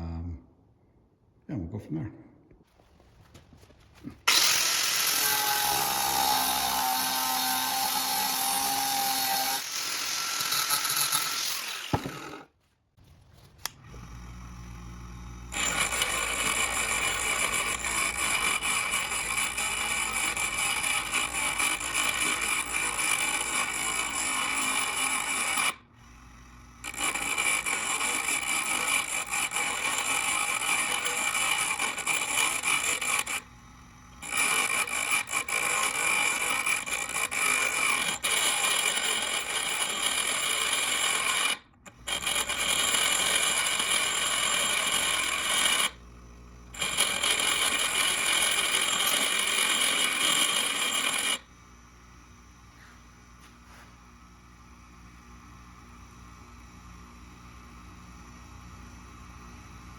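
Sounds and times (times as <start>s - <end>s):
power tool grinding steel: 4.3s - 12.6s, 13.9s - 25.8s, 26.8s - 46.0s, 46.7s - 51.5s.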